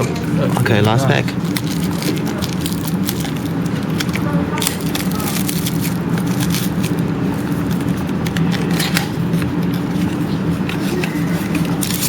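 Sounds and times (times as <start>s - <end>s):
steady low hum: 0.0s - 12.0s
card wrapper crinkling: 1.2s - 12.0s.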